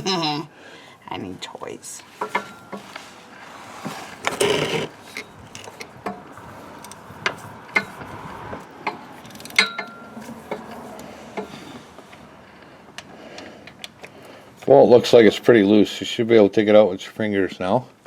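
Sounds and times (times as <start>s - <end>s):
metal scrape: 2.1s - 8.2s.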